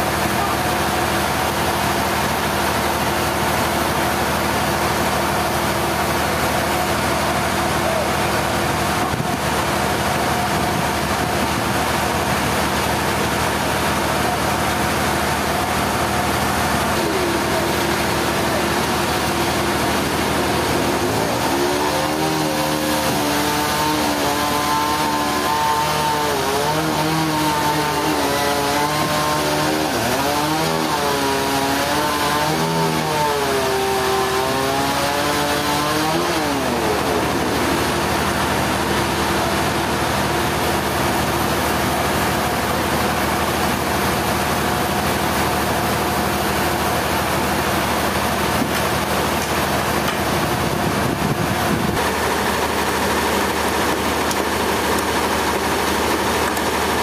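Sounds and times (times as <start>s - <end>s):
engine revving: 15.3s - 38.8s.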